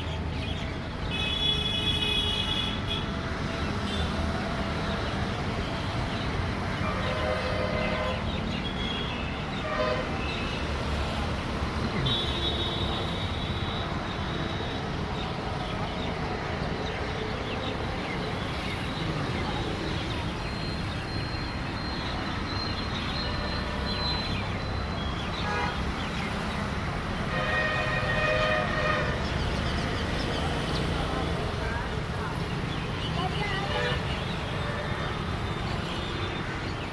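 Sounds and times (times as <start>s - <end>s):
road traffic rumble: 0.0s - 36.9s
vehicle horns: 6.7s - 10.6s, 11.9s - 14.8s, 25.3s - 26.0s, 27.2s - 29.4s.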